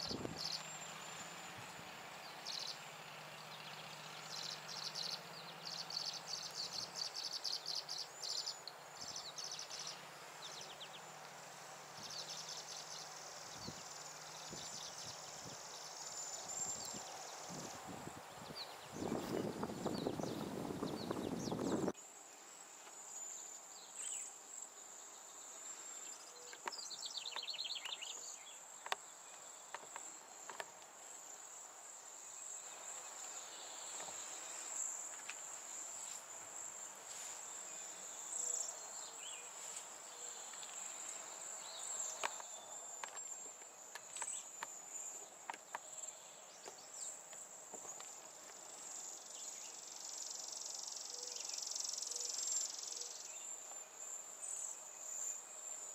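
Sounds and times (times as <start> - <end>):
insect chorus: 0.0 - 55.9.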